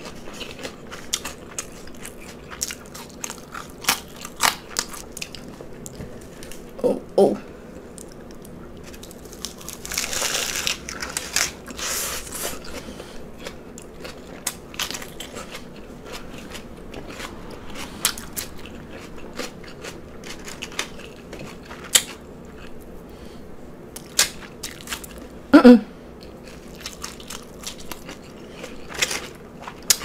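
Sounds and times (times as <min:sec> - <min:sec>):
chewing with mouth clicks: 0:00.0 - 0:06.6, 0:10.8 - 0:22.9, 0:24.0 - 0:25.3, 0:26.2 - 0:30.0
lettuce crunching: 0:07.9 - 0:22.8, 0:26.2 - 0:30.0.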